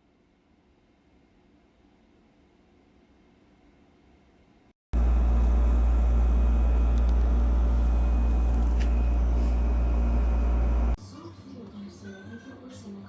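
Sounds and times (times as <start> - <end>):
low mechanical rumble: 5.0 - 11.0.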